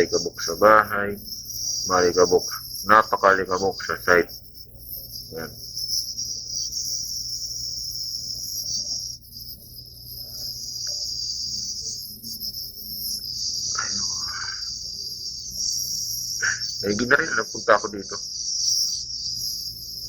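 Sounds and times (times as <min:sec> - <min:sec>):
nebulizer motor hum: 0:00.0 - 0:20.0
high hiss of air: 0:16.4 - 0:18.1.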